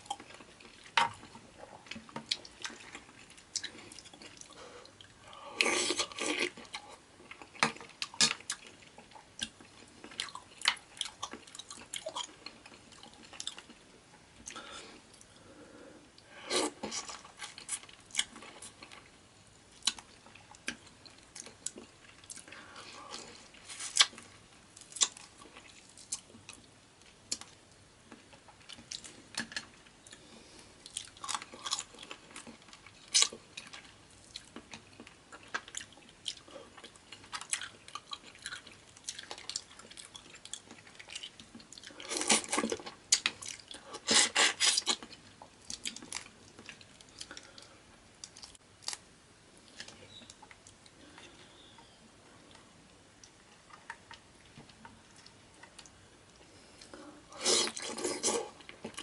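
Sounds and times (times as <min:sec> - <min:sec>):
person chewing and crunching food: 0:00.0 - 0:15.3, 0:16.4 - 0:49.0, 0:49.6 - 0:59.0.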